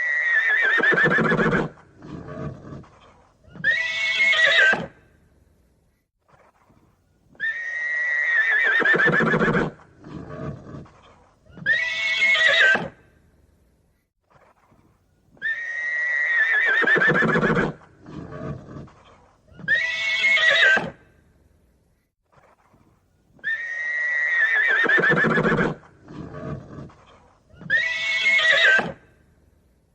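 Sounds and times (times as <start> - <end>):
horse whinnying: 0.0 - 5.0, 7.4 - 13.0, 15.4 - 21.0, 23.4 - 29.0.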